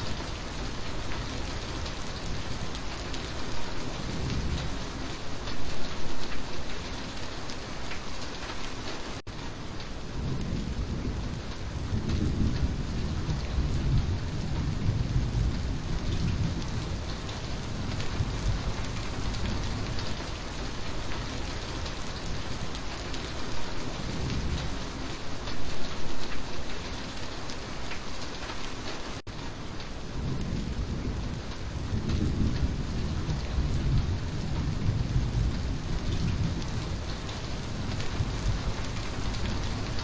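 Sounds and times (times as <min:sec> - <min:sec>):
low rolling thunder: 0:00.0 - 0:06.7, 0:10.0 - 0:26.3, 0:30.0 - 0:40.0
steady rain: 0:00.0 - 0:40.0.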